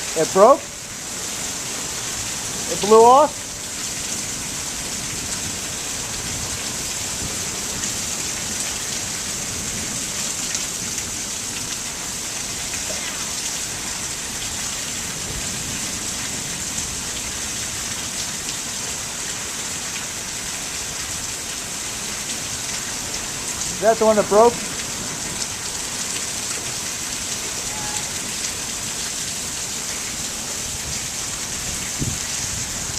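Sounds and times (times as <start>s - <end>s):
heavy rain pouring: 0.0s - 32.9s.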